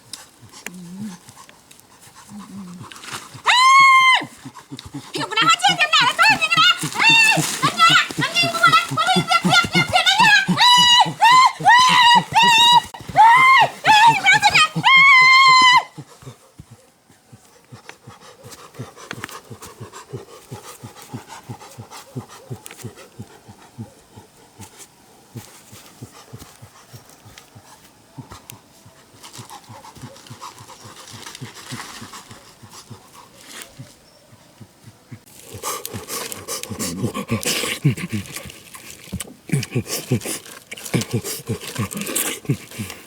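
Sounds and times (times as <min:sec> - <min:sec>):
animal panting quickly: 0:04.3 - 0:12.1, 0:16.0 - 0:24.7, 0:25.4 - 0:38.6.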